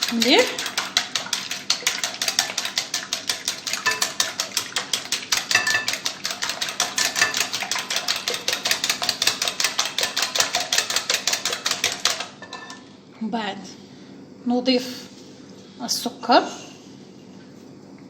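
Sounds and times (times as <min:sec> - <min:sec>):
whisk clicking against bowl: 0:00.0 - 0:12.4.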